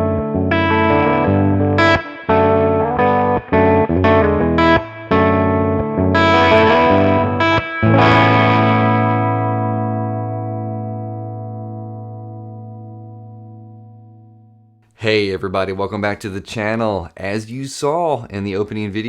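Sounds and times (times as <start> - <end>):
overdriven electric guitar: 0.0 - 14.7.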